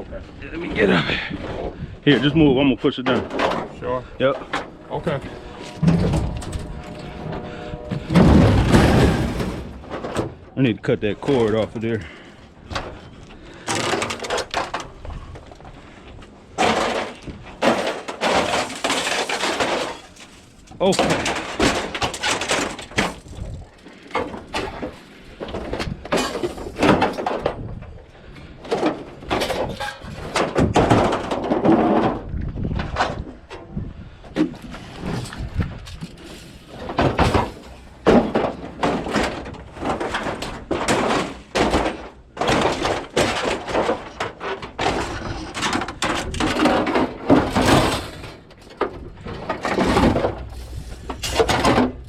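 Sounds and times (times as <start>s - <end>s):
scrap metal clanking and crashing: 0.7s - 52.0s.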